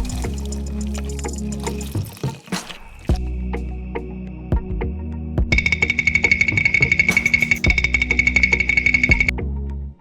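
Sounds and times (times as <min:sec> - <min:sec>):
music with fast beat: 0:05.5 - 0:09.3.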